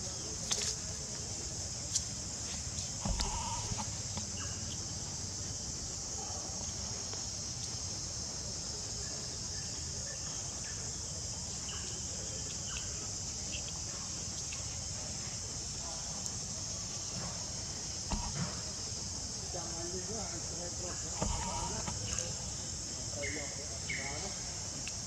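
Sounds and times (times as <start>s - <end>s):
insect chorus: 0.0s - 25.0s
thump: 3.0s - 3.8s, 18.1s - 18.7s.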